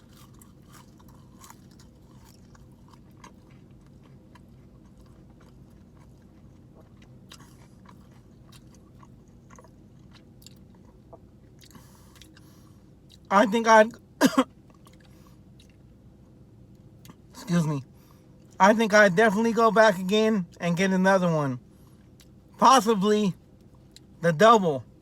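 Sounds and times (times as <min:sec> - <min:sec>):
person chewing food: 0:00.0 - 0:13.3, 0:14.5 - 0:16.3, 0:22.0 - 0:22.4.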